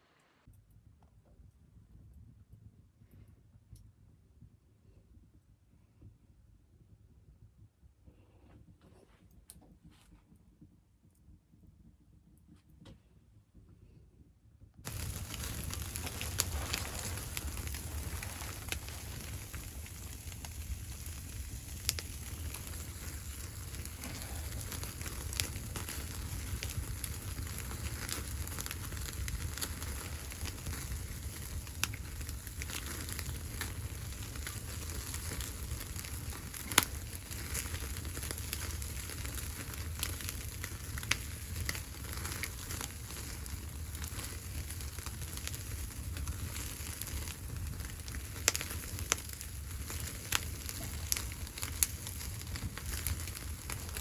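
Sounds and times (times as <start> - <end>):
wood fire crackling: 7.2 - 13.0, 14.8 - 54.0.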